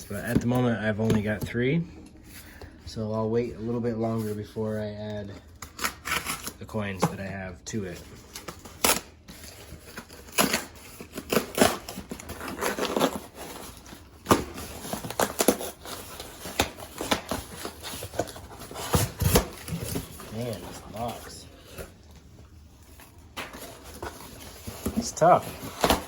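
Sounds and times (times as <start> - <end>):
cardboard scraping and tearing: 5.7 - 6.6, 7.8 - 22.0, 23.0 - 26.0
cardboard snapping: 14.2 - 20.6.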